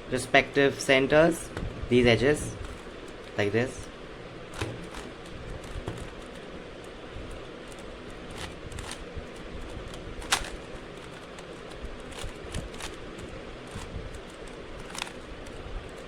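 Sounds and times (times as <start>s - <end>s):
low background hum: 0.0s - 16.0s
puzzle cube clicking: 4.5s - 16.0s.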